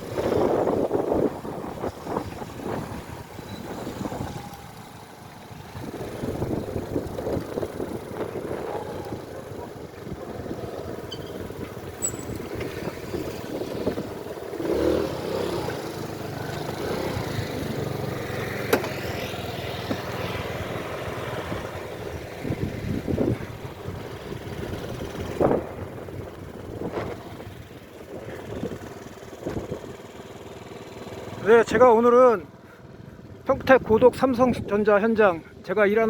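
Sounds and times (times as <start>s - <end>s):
wind noise on microphone: 0.0s - 5.0s, 5.6s - 18.2s, 19.9s - 30.0s
motorcycle engine running: 0.0s - 34.4s.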